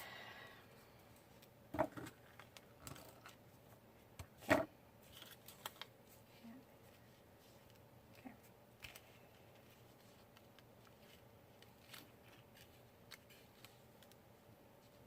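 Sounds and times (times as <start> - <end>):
paper rustling: 5.0 - 7.8, 8.8 - 14.2.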